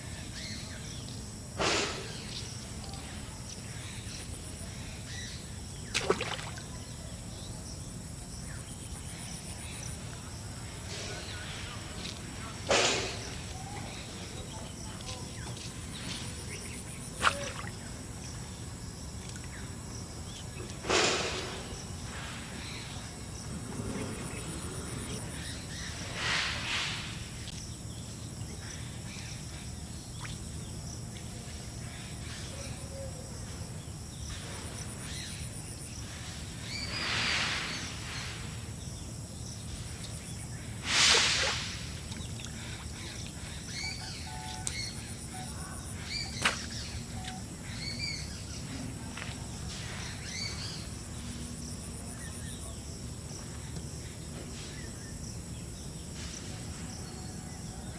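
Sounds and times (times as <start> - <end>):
high insect trill: 0.0 - 57.9
small birds chirping: 0.0 - 57.9.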